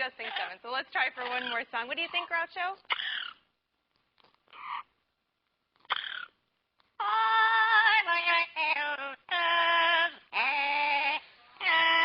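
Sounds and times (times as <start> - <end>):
parrot singing: 7.0 - 12.0.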